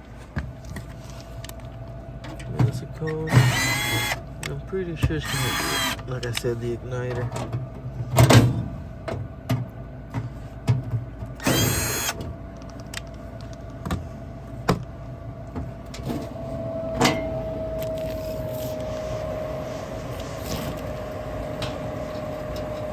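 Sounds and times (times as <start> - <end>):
steady humming tone: 0.0 - 22.9
cordless drill whirring: 3.3 - 4.2, 5.2 - 6.0, 11.4 - 12.2.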